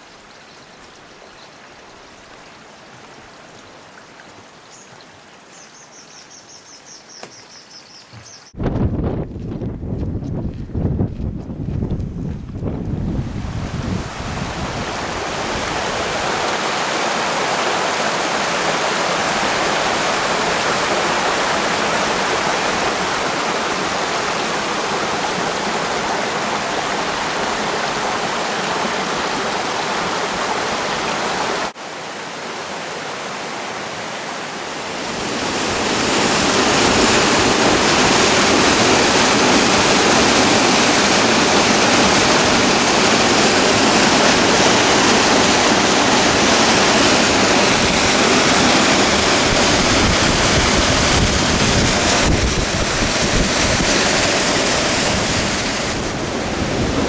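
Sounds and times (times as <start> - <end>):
flowing water rushing: 13.2 - 57.0.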